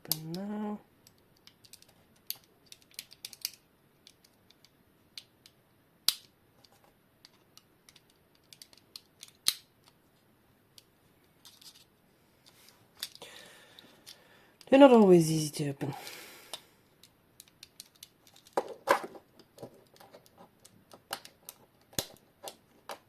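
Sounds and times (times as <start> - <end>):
sharp plastic snaps: 0.0 - 10.0, 16.5 - 23.0.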